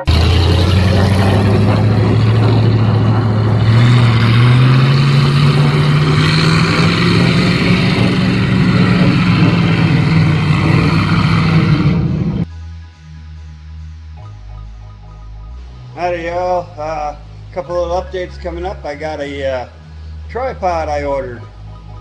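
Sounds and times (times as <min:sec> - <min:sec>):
car engine revving: 0:00.0 - 0:12.5.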